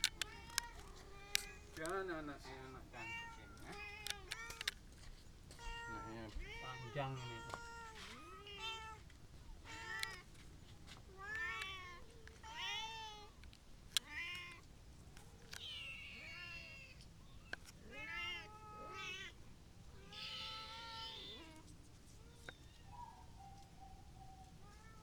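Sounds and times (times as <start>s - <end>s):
sharp click: 0.0s - 2.0s
kittens meowing: 0.0s - 4.8s, 5.5s - 13.4s, 14.0s - 25.0s.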